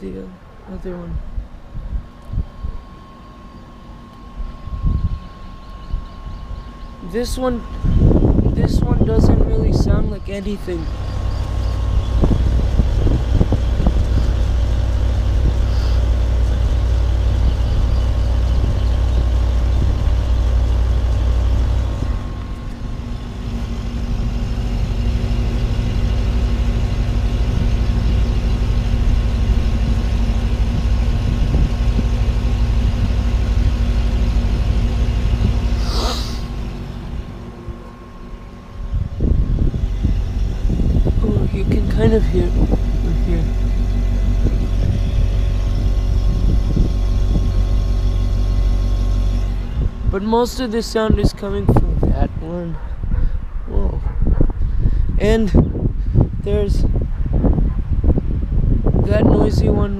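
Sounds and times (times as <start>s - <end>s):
air conditioner units humming: 0.0s - 59.9s
short sweeping whoosh: 35.7s - 47.8s.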